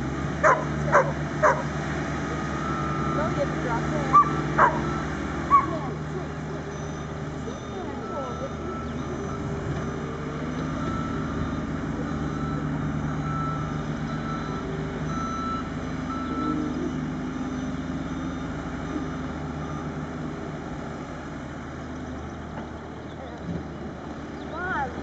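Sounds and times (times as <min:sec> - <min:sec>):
diesel engine hum: 0:00.0 - 0:25.0
reversing alarm beeping: 0:06.7 - 0:20.1.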